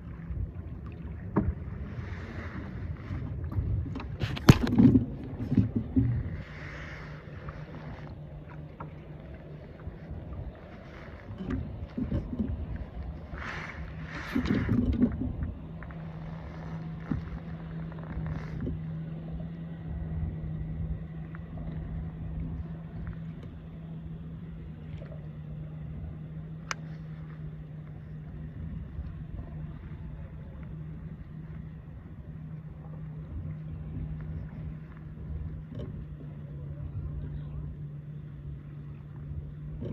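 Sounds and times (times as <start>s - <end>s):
wind rumble: 0.0s - 24.8s
low motor hum: 0.0s - 39.9s
water noise: 0.0s - 39.9s.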